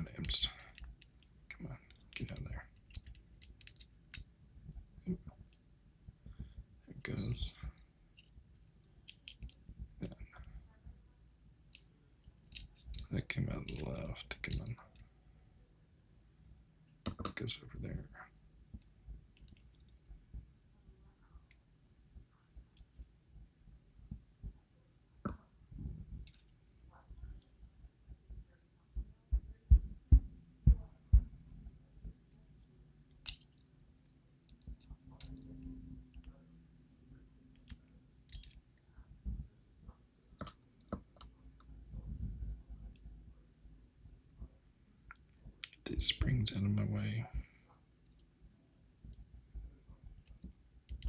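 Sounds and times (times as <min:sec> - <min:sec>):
small metal clicks and taps: 0:00.2 - 0:01.3, 0:01.9 - 0:04.3, 0:09.1 - 0:09.6, 0:11.7 - 0:15.1, 0:32.6 - 0:36.3, 0:37.5 - 0:38.6, 0:50.2 - 0:51.0.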